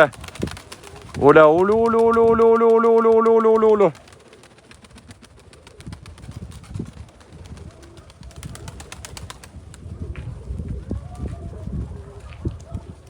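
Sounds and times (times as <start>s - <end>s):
wind buffeting microphone: 5.8s - 13.0s.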